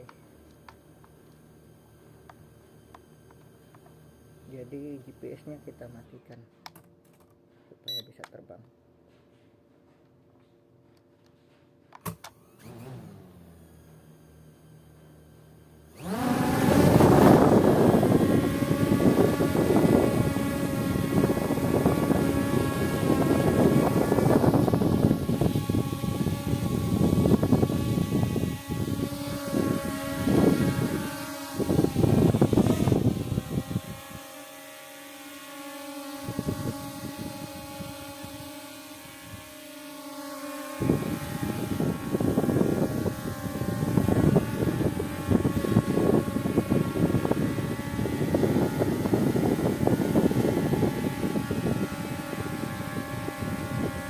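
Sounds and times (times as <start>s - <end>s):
drone motors whining: 0.0s - 6.4s, 11.4s - 54.0s
propeller noise: 11.9s - 54.0s.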